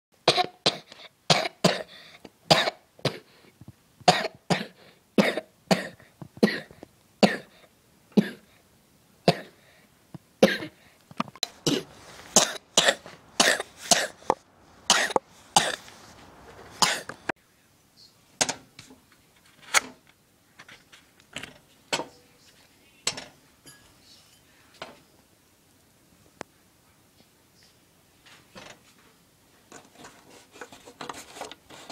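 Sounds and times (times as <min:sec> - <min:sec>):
person coughing: 0:00.2 - 0:03.3, 0:04.1 - 0:08.5, 0:09.3 - 0:09.6, 0:10.4 - 0:10.8, 0:11.6 - 0:15.9, 0:16.8 - 0:17.2.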